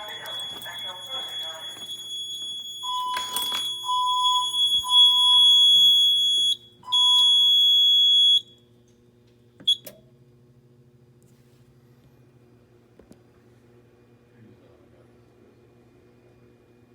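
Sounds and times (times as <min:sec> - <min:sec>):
fire alarm high-pitched tone: 0:00.0 - 0:08.6
lower alarm beeps: 0:00.0 - 0:08.6.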